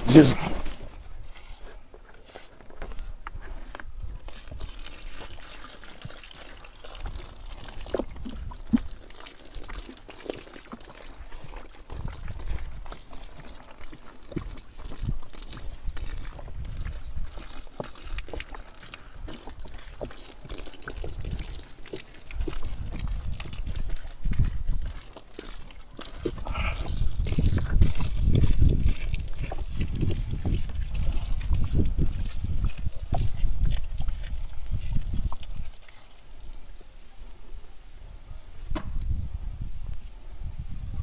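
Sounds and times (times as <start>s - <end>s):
liquid pouring and trickling: 4.1s - 36.8s.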